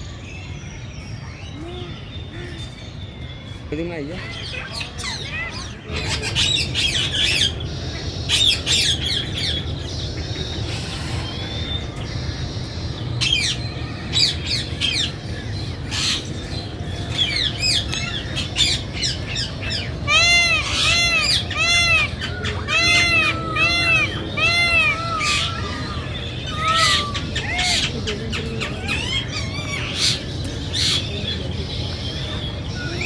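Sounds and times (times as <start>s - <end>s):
birds chirping and squawking: 0.0s - 33.0s
low background hum: 0.0s - 33.0s
peafowl calling: 19.7s - 30.2s.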